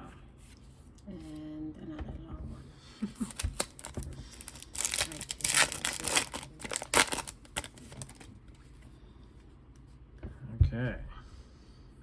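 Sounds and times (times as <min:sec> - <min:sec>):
foil wrapper crinkling and tearing: 0:03.2 - 0:08.3.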